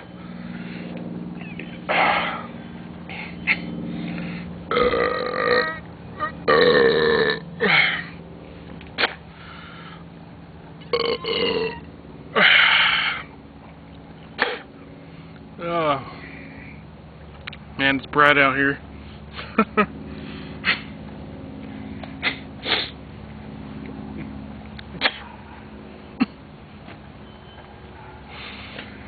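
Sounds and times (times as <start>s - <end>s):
man burping: 4.7s - 8.0s, 10.9s - 11.8s.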